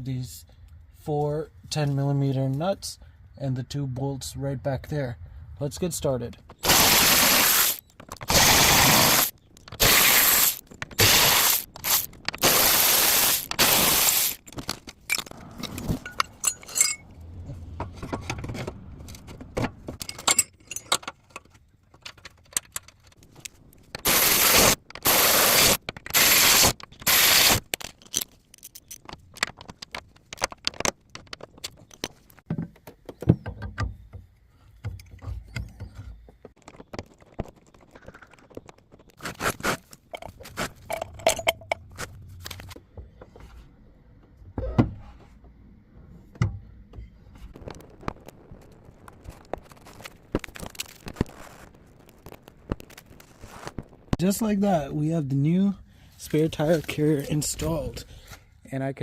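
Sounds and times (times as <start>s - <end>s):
metal clicks and scrapes: 6.5s - 17.1s, 17.8s - 32.5s
ratchet clicking: 6.6s - 14.4s, 24.0s - 27.7s.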